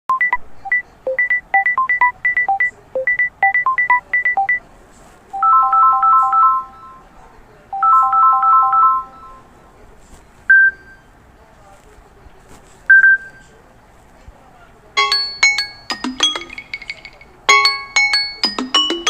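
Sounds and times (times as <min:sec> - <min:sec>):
ringtone with chiming notes: 0:05.4 - 0:07.1, 0:07.8 - 0:09.4, 0:15.0 - 0:19.0.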